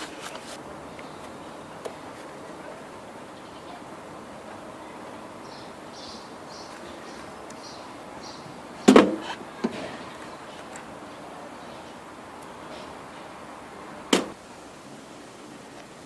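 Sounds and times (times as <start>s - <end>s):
faint rustles: 0.0s - 2.8s
loud sharp metal clunk: 8.9s - 10.1s.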